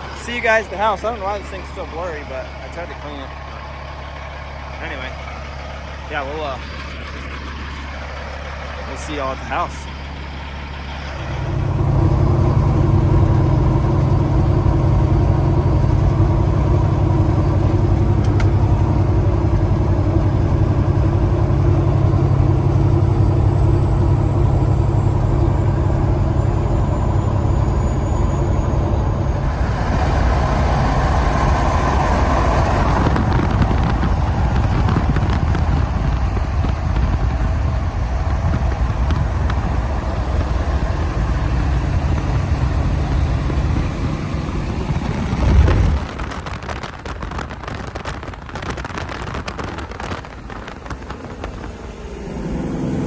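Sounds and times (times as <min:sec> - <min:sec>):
faint high whine: 0:00.0 - 0:32.2
truck diesel engine running: 0:00.0 - 0:53.0.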